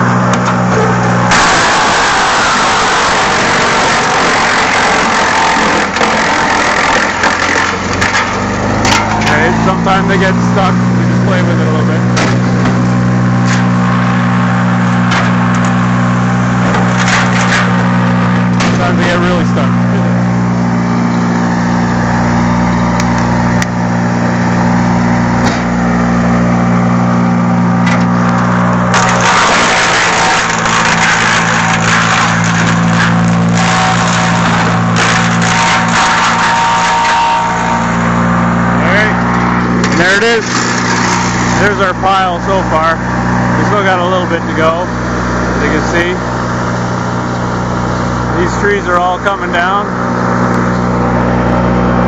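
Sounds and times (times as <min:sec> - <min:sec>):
wood chipper running: 0:00.0 - 0:52.0
branches cracking and snapping: 0:00.2 - 0:09.6, 0:27.7 - 0:38.0, 0:39.2 - 0:41.7
grinding hiss of shredding wood: 0:01.0 - 0:20.1, 0:28.2 - 0:49.4.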